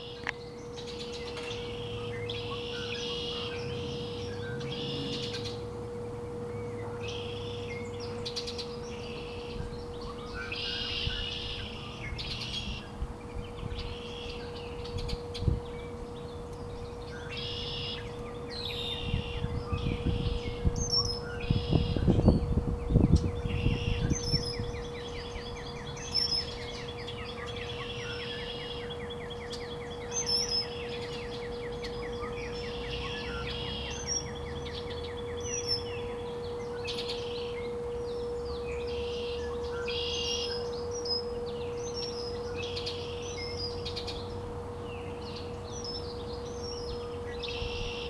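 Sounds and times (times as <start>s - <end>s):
songbird trilling: 0.0s - 48.0s
steady hum: 0.0s - 48.0s.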